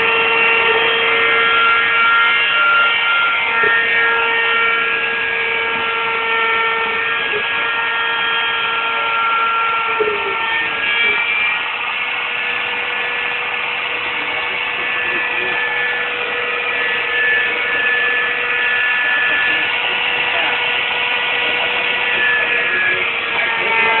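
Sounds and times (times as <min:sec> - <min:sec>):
cnc router motors whining: 0:00.0 - 0:24.0.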